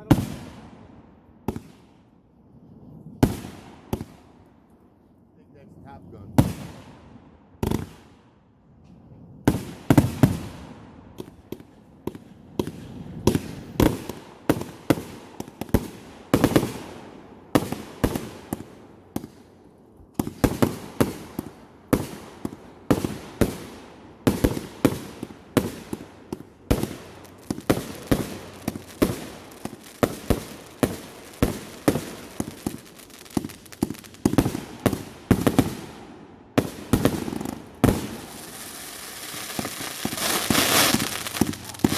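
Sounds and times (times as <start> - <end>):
fireworks bangs: 3.1 - 4.3, 9.4 - 19.4, 20.2 - 41.9.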